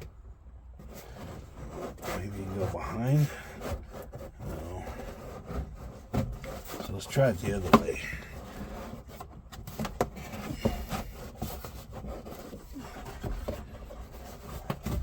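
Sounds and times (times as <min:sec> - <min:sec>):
glove box knocking against dash: 0:09.5 - 0:11.7.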